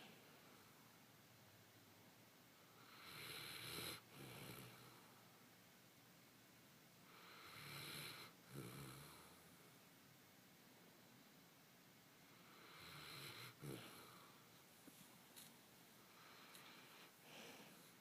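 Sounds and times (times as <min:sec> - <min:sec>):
faint snoring: 0:02.7 - 0:05.1, 0:07.1 - 0:09.5, 0:12.3 - 0:14.4.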